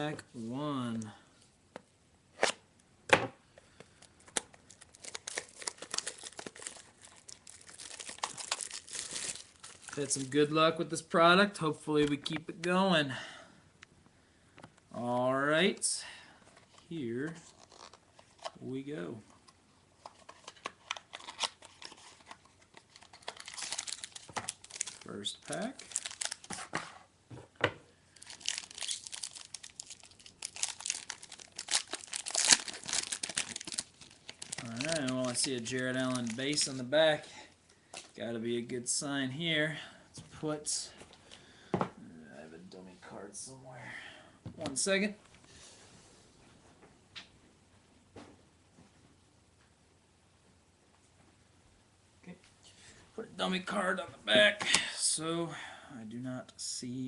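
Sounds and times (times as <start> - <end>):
wrapper tearing and crinkling: 4.4 - 10.3, 17.4 - 18.5, 20.1 - 26.7, 28.2 - 36.8.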